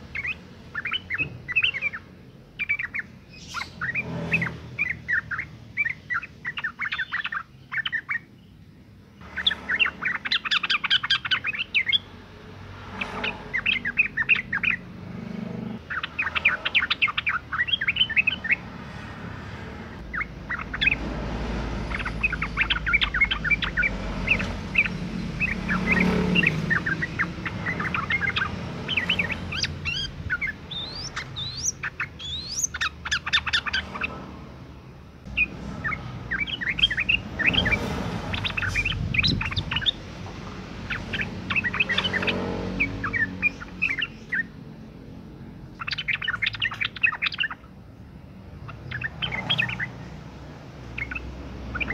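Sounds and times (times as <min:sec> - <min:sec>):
bird chattering call: 0:09.3 - 0:12.1, 0:15.8 - 0:18.6, 0:21.8 - 0:34.2, 0:40.9 - 0:44.6, 0:50.9 - 0:51.9.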